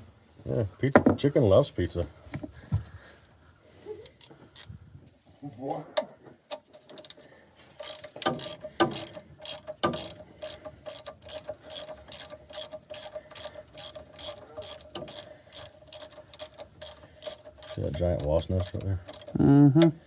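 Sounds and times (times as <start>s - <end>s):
ratchet wrench clicking: 7.8s - 19.4s.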